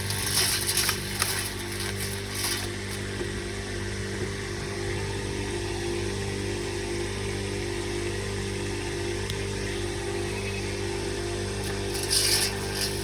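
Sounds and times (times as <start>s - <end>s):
leaves crunching: 0.0s - 3.3s, 11.6s - 13.0s
chopping machine motor humming: 0.0s - 13.0s.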